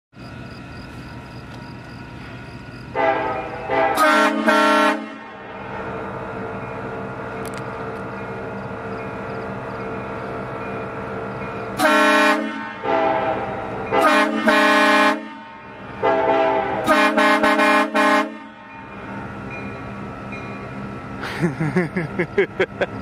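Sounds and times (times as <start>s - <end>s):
train air horn chord: 2.9s - 5.5s, 11.8s - 18.9s.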